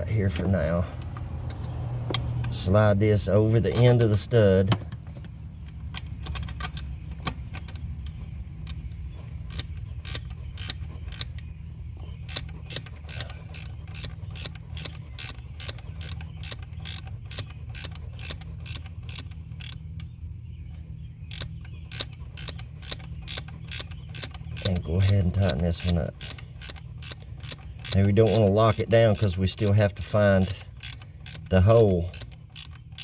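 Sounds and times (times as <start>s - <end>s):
low steady hum: 0.0s - 33.0s
ratcheting wrench clicking: 5.6s - 11.4s, 12.2s - 20.1s, 21.3s - 33.0s.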